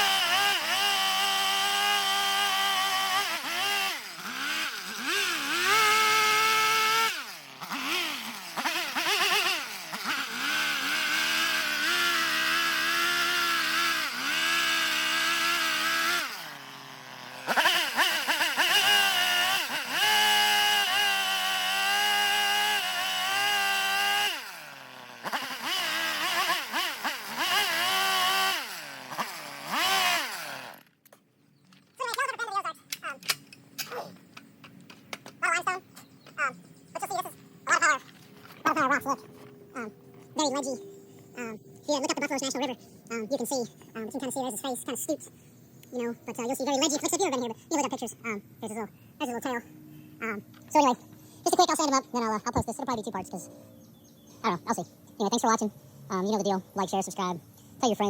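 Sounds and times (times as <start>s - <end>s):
chainsaw cutting wood: 0.0s - 31.1s.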